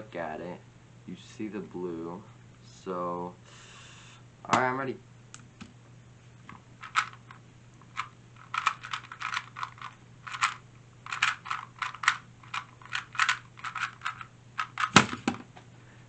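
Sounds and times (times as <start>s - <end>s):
puzzle cube plastic clicking: 6.8s - 15.2s.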